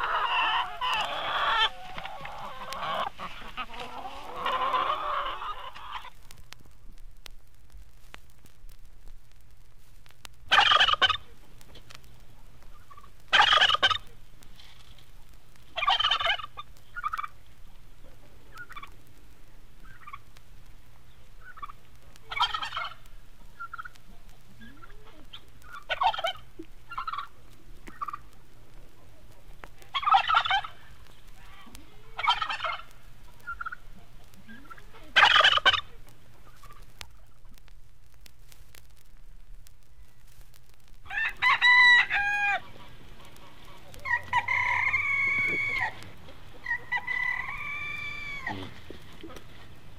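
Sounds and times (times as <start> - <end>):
soft short turkey calls: 0.0 - 6.4, 10.5 - 14.2, 19.8 - 20.3, 21.1 - 37.6, 41.2 - 49.8
turkeys gobbling: 0.0 - 6.5, 10.5 - 19.0, 19.8 - 37.6, 41.0 - 49.9.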